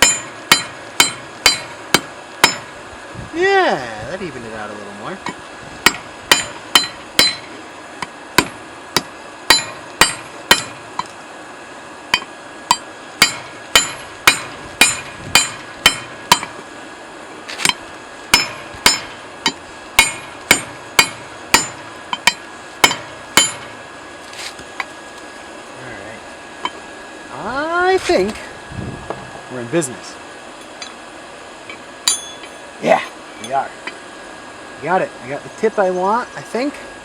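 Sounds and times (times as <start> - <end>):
hammer striking hot steel: 0.0 - 2.8, 5.2 - 11.2, 12.1 - 16.6, 17.6 - 23.8, 31.7 - 32.7.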